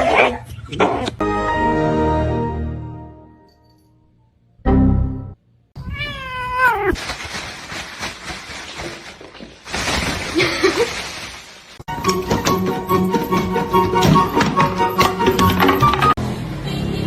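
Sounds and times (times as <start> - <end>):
cat meowing: 5.8 - 7.0.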